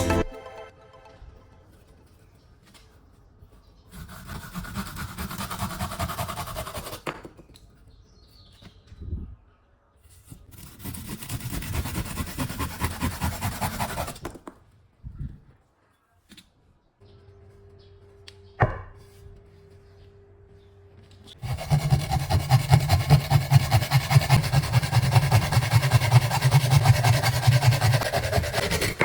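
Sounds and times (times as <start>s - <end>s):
handsaw cutting wood: 3.9s - 7.2s, 10.5s - 14.4s, 21.4s - 29.0s.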